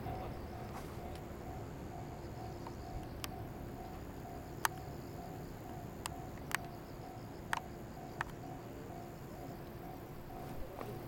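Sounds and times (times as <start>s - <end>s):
faint high whine: 0.0s - 11.0s
level-crossing alarm clanging: 0.0s - 11.0s
sharp clicks: 5.6s - 6.8s.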